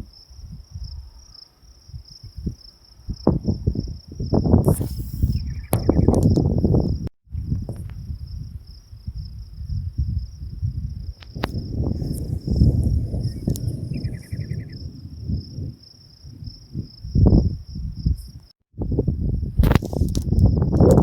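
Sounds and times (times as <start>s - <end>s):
crickets trilling: 0.0s - 21.0s
wind buffeting microphone: 1.9s - 21.0s
short rapid chirp: 4.7s - 6.2s.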